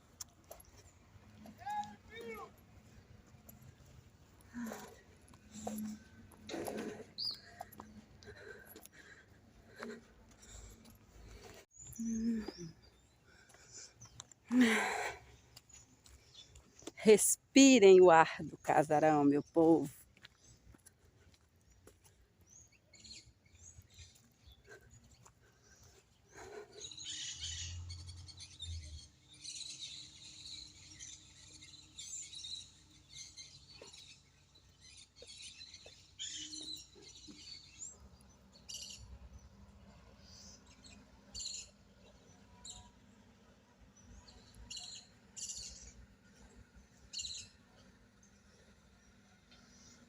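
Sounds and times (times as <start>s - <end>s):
birds chirping and calling: 0.5s - 16.8s, 21.8s - 39.5s, 40.2s - 42.8s, 44.0s - 46.1s.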